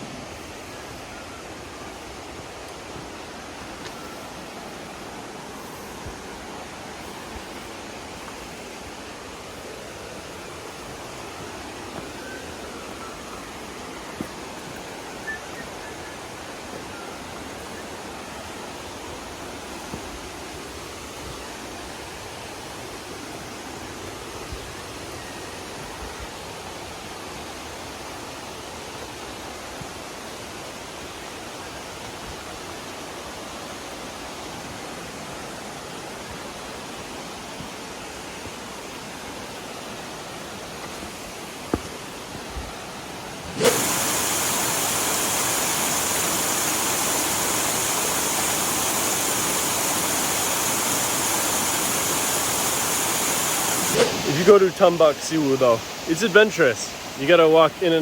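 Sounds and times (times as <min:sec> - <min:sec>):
falling water rushing: 0:00.0 - 0:58.0.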